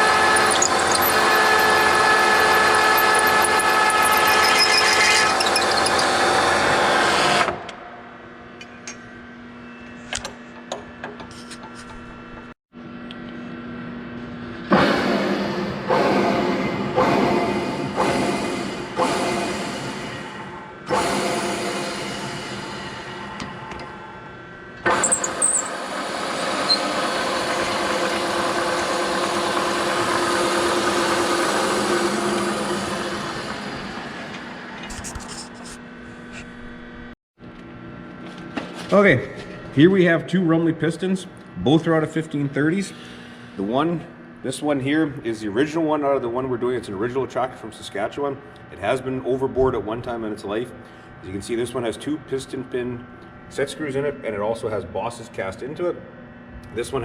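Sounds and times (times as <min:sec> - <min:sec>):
milling machine cutting metal: 0:00.0 - 0:07.6, 0:24.8 - 0:34.6.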